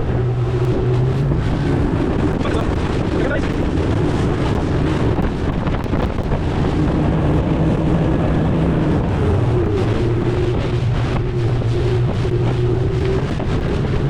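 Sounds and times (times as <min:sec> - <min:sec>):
motorboat engine running: 0:00.0 - 0:14.0
water rushing past hull: 0:00.0 - 0:14.0
wind buffeting microphone: 0:00.0 - 0:14.0.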